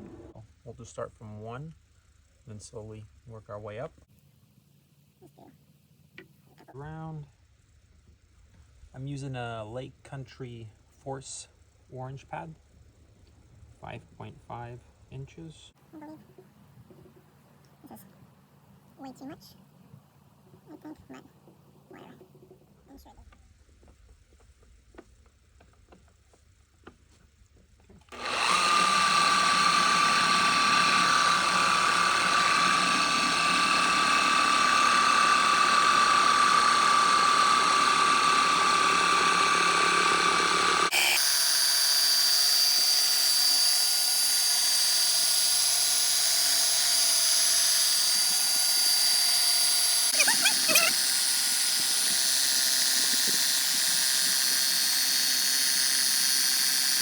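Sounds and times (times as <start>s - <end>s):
polisher motor whining: 28.1s - 57.0s.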